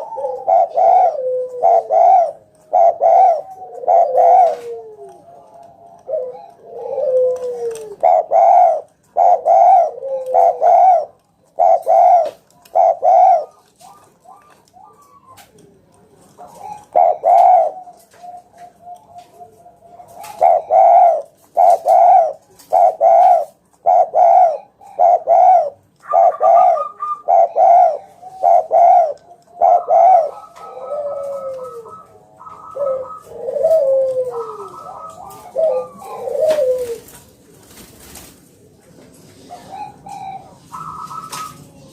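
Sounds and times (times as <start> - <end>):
dove cooing: 0.0 - 38.3, 39.3 - 41.9
higher steady bird notes: 16.6 - 37.0, 39.6 - 41.9.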